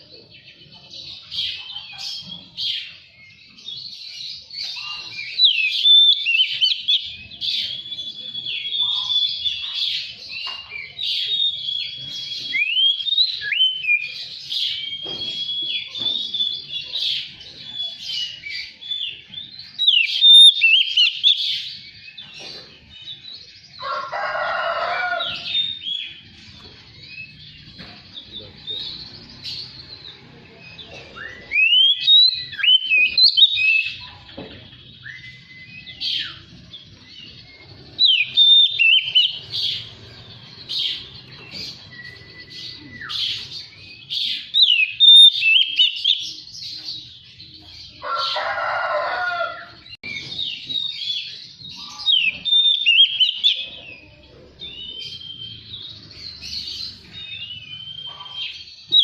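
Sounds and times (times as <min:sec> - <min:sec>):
bird singing whistled phrases: 0:04.8 - 0:09.7, 0:11.2 - 0:16.7, 0:17.7 - 0:21.6, 0:30.8 - 0:34.1, 0:35.0 - 0:36.5, 0:37.3 - 0:39.5, 0:41.0 - 0:46.3, 0:50.1 - 0:53.7, 0:54.7 - 0:55.9, 0:56.9 - 0:59.0.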